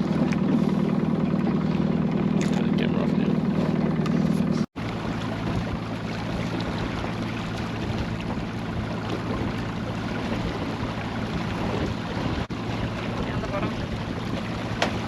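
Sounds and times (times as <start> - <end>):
outboard motor running: 0.0 - 15.0
wind noise: 5.4 - 15.0.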